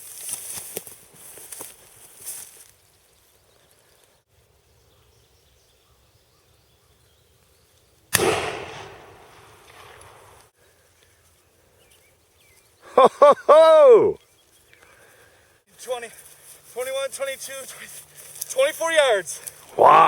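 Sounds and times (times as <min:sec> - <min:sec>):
shotgun shot: 0:08.1 - 0:10.3.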